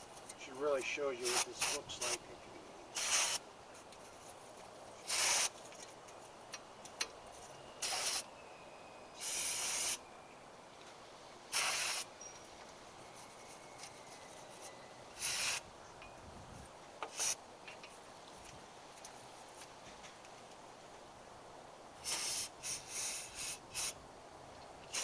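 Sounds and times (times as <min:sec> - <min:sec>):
aerosol spray can hissing: 0:01.2 - 0:02.2, 0:03.0 - 0:03.4, 0:05.1 - 0:05.5, 0:07.8 - 0:08.3, 0:11.6 - 0:12.1, 0:15.2 - 0:15.6, 0:22.0 - 0:24.0.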